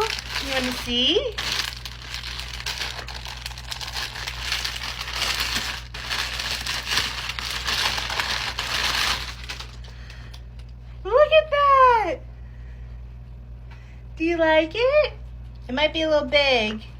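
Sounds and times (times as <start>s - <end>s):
plastic packaging crinkling: 0.0s - 10.4s.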